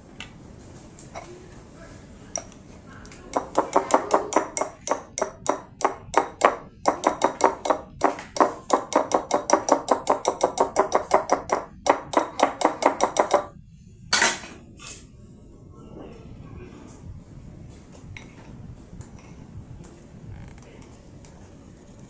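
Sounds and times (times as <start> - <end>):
utensil clinking against dish: 3.4 - 13.5.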